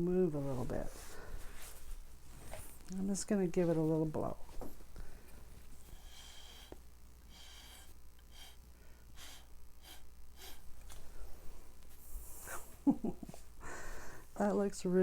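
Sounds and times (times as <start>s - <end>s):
short puffs of breath: 6.0s - 11.3s.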